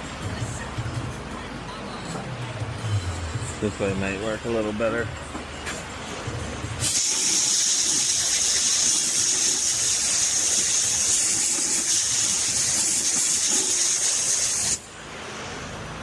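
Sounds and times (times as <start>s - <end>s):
high-pitched spraying hiss: 6.8s - 14.9s.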